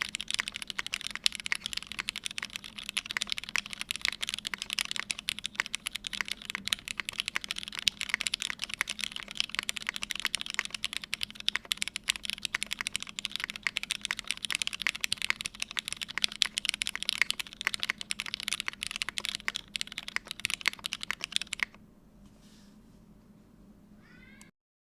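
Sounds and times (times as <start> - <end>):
rapid mechanical keyboard typing: 0.0 - 21.8.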